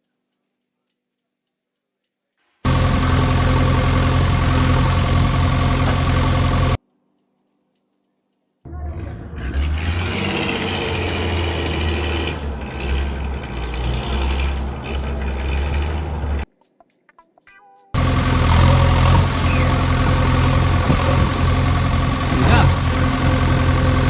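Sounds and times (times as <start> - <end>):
lower engine running: 2.6 - 6.8, 8.7 - 16.5, 18.0 - 24.0
steady motor running: 2.7 - 6.8, 8.9 - 16.4, 18.0 - 24.0.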